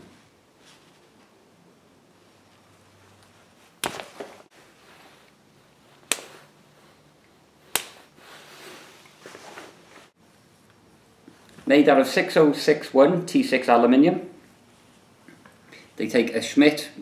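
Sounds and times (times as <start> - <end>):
rustling of handling: 0.0 - 1.4, 7.8 - 10.2.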